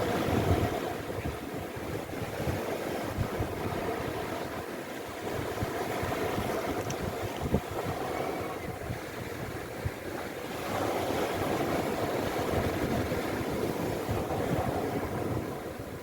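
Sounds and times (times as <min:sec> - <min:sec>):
sea waves washing in: 0:00.0 - 0:16.0
wind buffeting microphone: 0:00.0 - 0:16.0.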